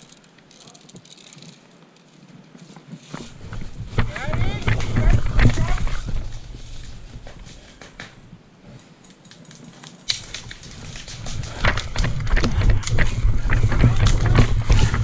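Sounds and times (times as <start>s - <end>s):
clothing and gear rustling: 0.0s - 15.0s
sharp twig cracks: 9.1s - 12.4s.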